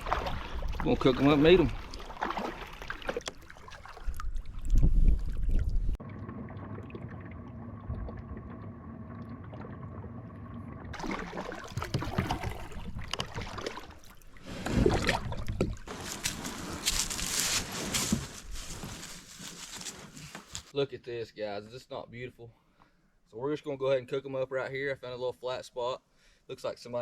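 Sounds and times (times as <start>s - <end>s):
paddle strokes: 0.0s - 5.0s, 11.0s - 20.8s
water around kayak hull: 0.0s - 20.8s.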